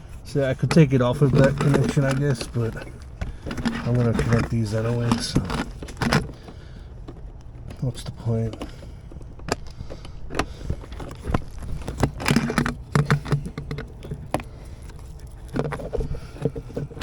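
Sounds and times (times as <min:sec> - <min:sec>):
cables rustling: 0:00.0 - 0:17.0.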